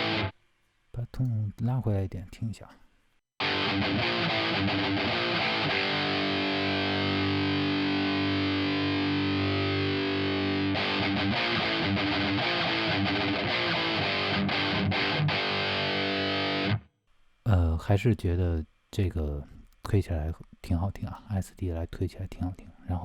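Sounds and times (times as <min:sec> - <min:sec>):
distorted electric guitar: 0:00.0 - 0:00.3, 0:03.4 - 0:16.9.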